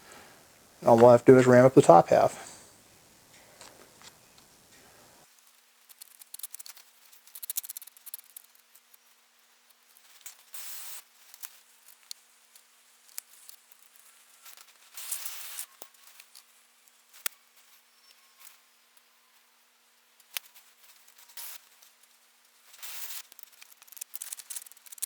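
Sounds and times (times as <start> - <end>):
faint steady hum: 0.0 - 5.4.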